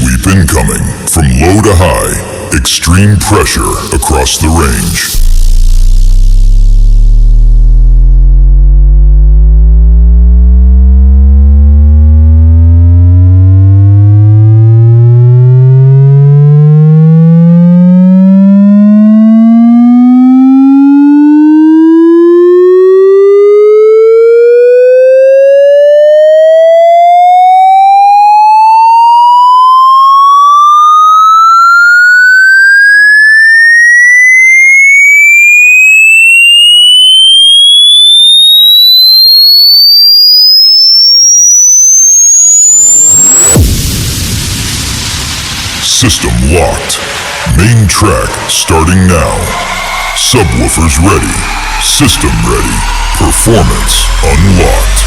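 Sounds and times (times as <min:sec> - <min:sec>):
rising test tone sweep: 0:05.1 - 0:46.0, 0:48.3 - 0:55.0.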